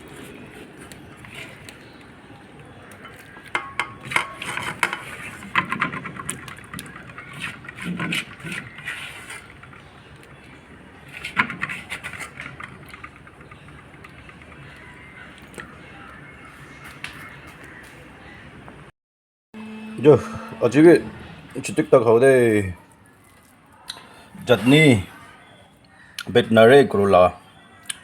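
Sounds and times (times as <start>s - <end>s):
kitchen utensils clinking on cookware: 3.0s - 10.4s.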